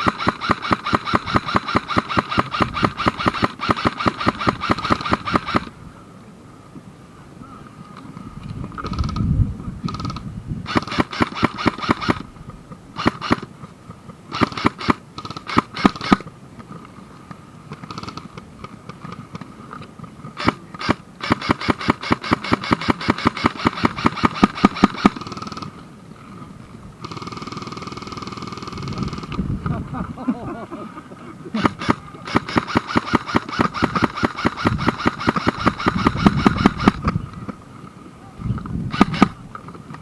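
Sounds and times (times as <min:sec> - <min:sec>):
airsoft guns firing bursts: 0:00.0 - 0:05.7, 0:09.9 - 0:12.3, 0:13.0 - 0:13.5, 0:14.3 - 0:16.3, 0:17.7 - 0:19.3, 0:20.4 - 0:25.8, 0:27.0 - 0:29.4, 0:31.6 - 0:37.2, 0:38.9 - 0:39.4.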